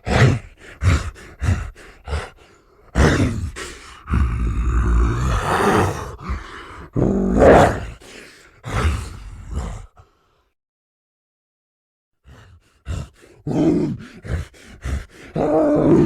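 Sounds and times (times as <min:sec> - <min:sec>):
gorilla grunts: 0:04.3 - 0:07.3
gorilla groaning roar: 0:04.4 - 0:06.4, 0:15.4 - 0:16.0.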